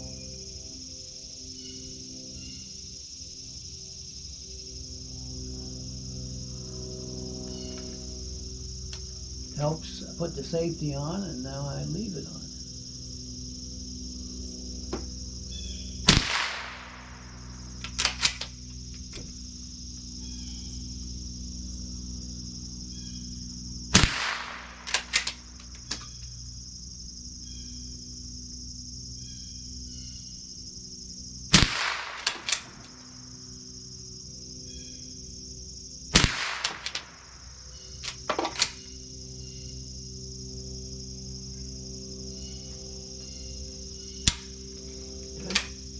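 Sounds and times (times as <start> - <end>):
insects shrilling: 0.0 - 45.9
rifle shots: 16.0 - 18.6, 23.9 - 26.1, 31.5 - 33.1, 36.1 - 38.8
rifle slide action clicks: 17.8 - 18.5, 24.0 - 26.1, 31.6 - 33.0.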